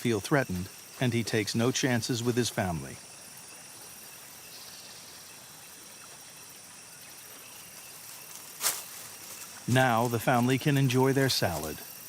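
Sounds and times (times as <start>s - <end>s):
high-pitched insect drone: 0.0s - 12.0s.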